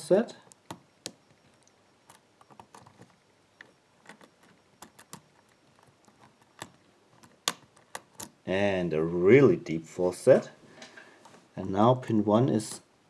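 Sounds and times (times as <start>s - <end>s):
lock pick clicks: 0.5s - 8.4s.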